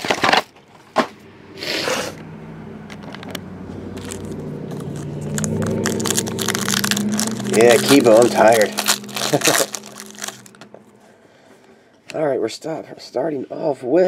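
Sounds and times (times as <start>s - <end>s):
foil wrappers tearing and crinkling: 4.0s - 10.6s.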